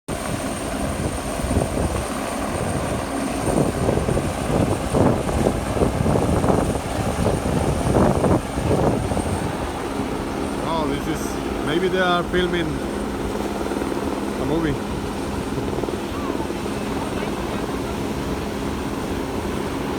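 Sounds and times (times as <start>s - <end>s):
helicopter rotor beating: 0.1s - 19.9s.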